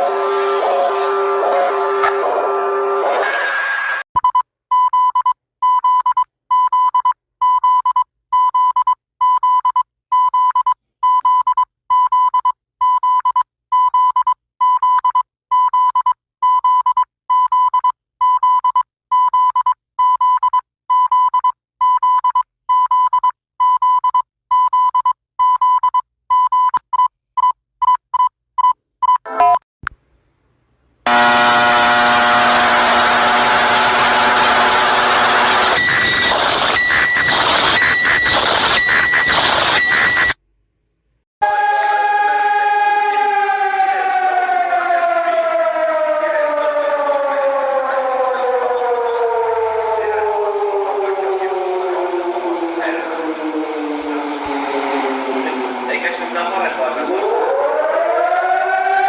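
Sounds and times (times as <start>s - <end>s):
emergency alert beeps: 31.1s - 40.4s, 46.6s - 58.7s
harsh alarm tone: 31.1s - 40.4s, 41.4s - 59.0s.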